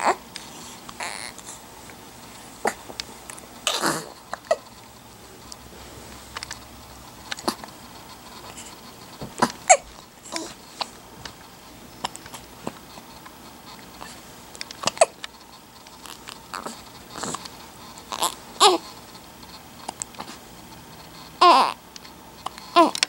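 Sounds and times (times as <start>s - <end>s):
children hiccuping: 3.6s - 4.6s.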